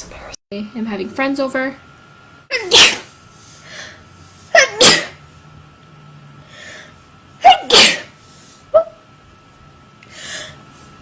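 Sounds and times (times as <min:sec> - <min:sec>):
woman sneezing: 0:02.5 - 0:03.1, 0:04.5 - 0:05.2, 0:07.4 - 0:08.2.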